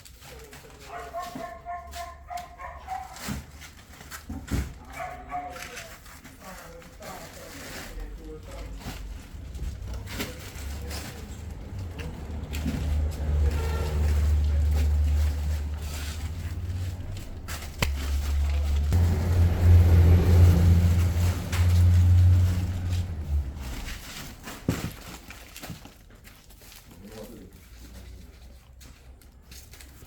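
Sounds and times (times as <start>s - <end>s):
vehicle engine rumbling: 8.0s - 26.2s.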